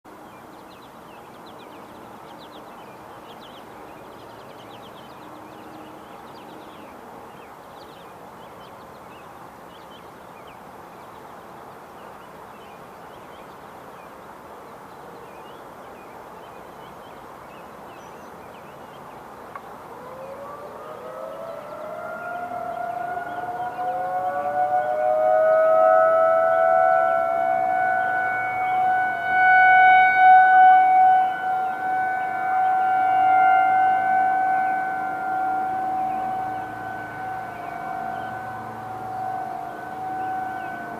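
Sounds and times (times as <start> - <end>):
steady background hiss: 0.1 - 23.4
warning sirens winding up: 19.9 - 40.9.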